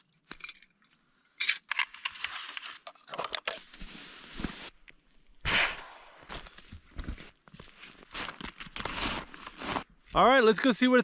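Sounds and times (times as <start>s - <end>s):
rustling and crunching: 1.7s - 10.2s.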